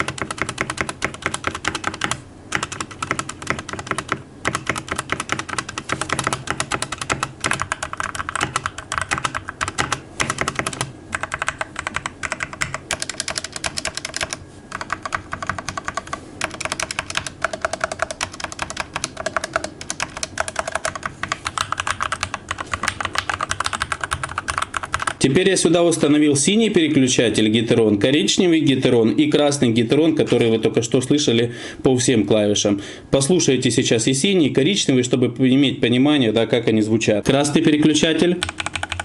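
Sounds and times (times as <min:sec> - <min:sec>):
fast mechanical keyboard typing: 0:00.0 - 0:25.2, 0:38.2 - 0:39.0.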